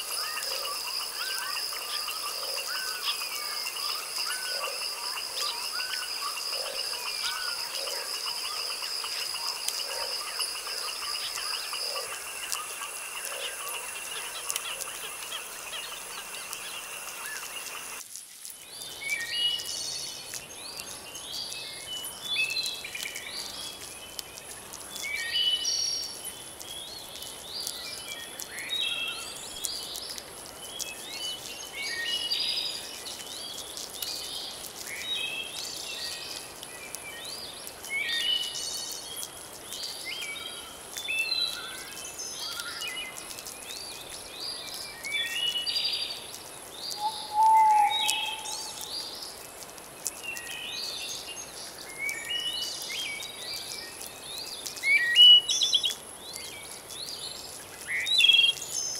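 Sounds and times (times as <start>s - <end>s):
frogs calling: 0.0s - 18.0s, 34.6s - 50.8s
insect trilling: 0.0s - 18.6s, 37.6s - 50.8s
songbirds chirping: 0.0s - 58.9s.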